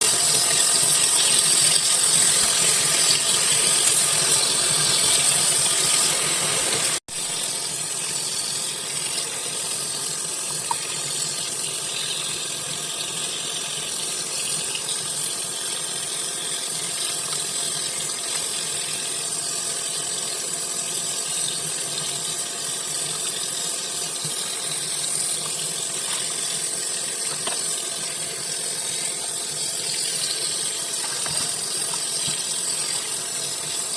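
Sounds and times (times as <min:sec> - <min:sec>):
running water rushing: 0:24.1 - 0:33.9.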